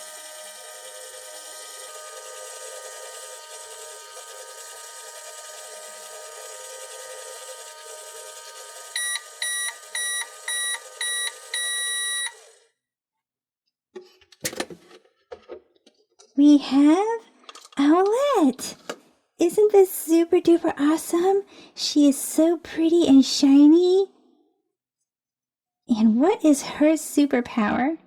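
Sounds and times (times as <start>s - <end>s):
toy microwave whirring hum: 0.0s - 12.8s
toy microwave beeps: 7.0s - 12.6s.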